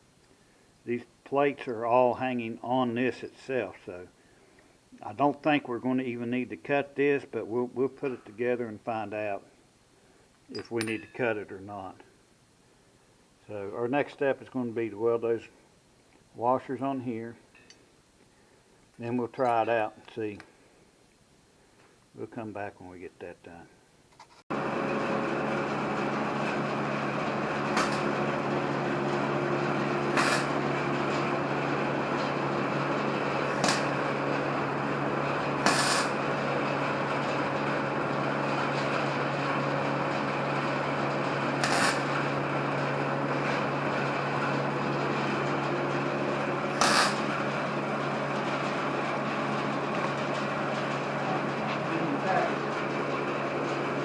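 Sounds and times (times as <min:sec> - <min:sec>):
steady mechanical hum: 0:00.0 - 0:54.0
sharp scraping strokes: 0:30.1 - 0:30.6, 0:46.7 - 0:47.3.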